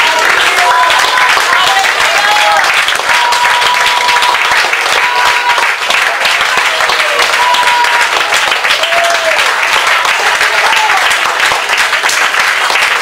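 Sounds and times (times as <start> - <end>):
people calling out in praise: 0.0 - 9.5
congregation clapping: 0.0 - 13.0.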